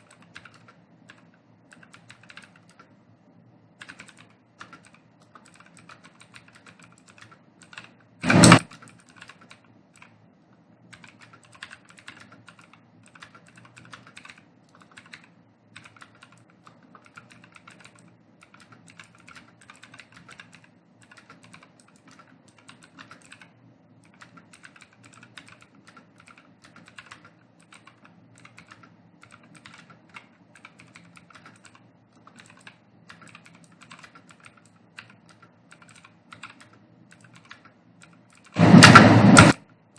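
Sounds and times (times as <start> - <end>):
fast typing on keyboard: 0.0 - 3.0, 3.8 - 10.2, 10.9 - 39.6
loud thump: 38.6 - 39.6.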